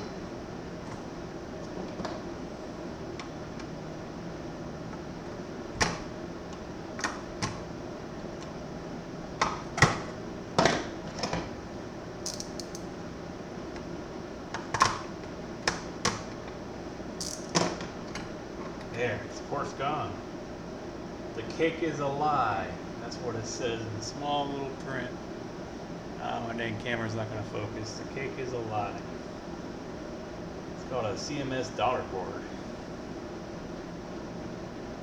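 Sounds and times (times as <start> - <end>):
small parts clicking and clacking: 12.3 - 12.9, 17.2 - 17.8.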